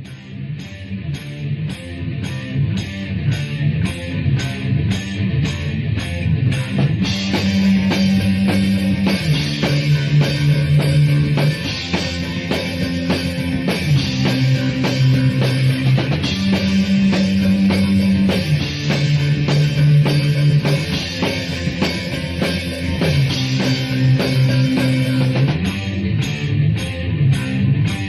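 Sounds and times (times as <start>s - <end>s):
punk rock band playing: 0.0s - 28.0s.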